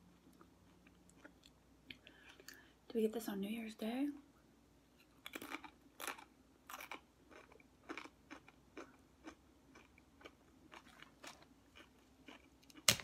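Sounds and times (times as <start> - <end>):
person chewing food: 0.1 - 2.7, 5.2 - 13.0.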